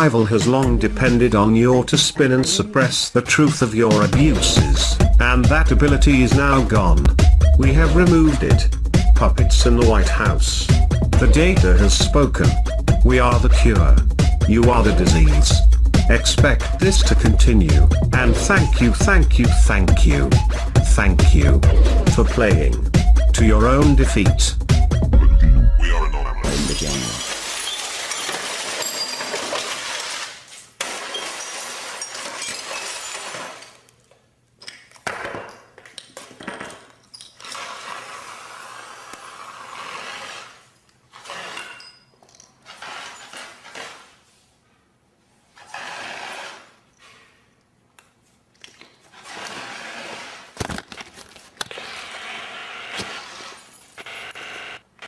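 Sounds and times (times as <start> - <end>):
glass breaking and shattering: 26.5 - 33.8.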